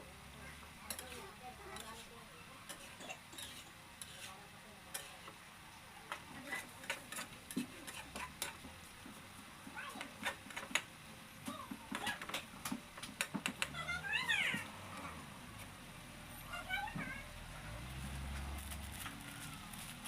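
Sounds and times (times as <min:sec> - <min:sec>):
faint sizzle: 0:00.0 - 0:20.0
utensil scraping a pan: 0:00.9 - 0:05.4, 0:06.2 - 0:08.8.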